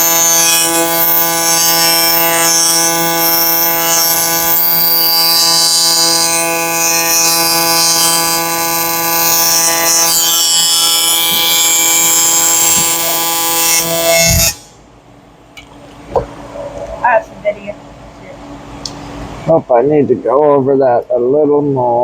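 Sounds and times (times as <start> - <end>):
welding arc buzzing and crackling: 0.0 - 14.8.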